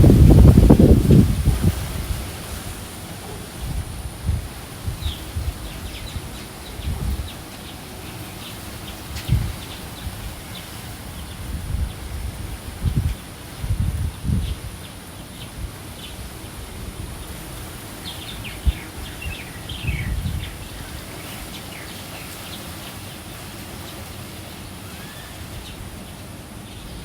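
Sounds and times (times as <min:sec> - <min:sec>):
wind gusts on microphone: 0:00.0 - 0:27.0
small birds chirping: 0:00.2 - 0:16.5, 0:17.1 - 0:27.0.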